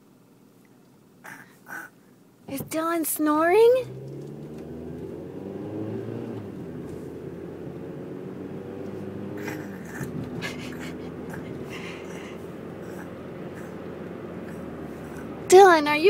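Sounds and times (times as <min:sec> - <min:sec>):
car interior drone: 0:01.1 - 0:16.0.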